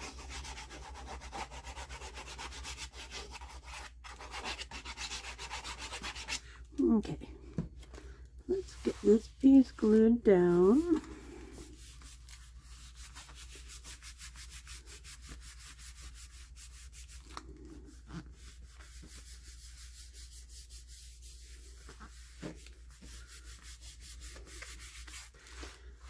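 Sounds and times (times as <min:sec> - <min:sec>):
rubbing strokes on paper: 0:00.0 - 0:07.0, 0:08.5 - 0:26.0.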